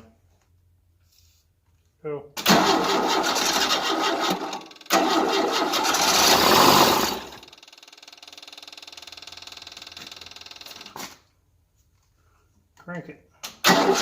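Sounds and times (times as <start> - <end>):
engine starter cranking: 2.4 - 11.0, 13.6 - 14.0.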